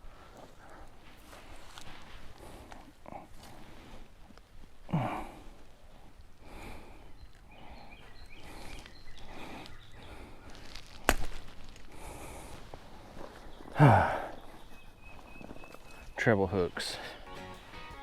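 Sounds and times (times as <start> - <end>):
footsteps outdoors: 0.0 - 18.0
low grunt: 4.9 - 5.4, 13.8 - 14.3.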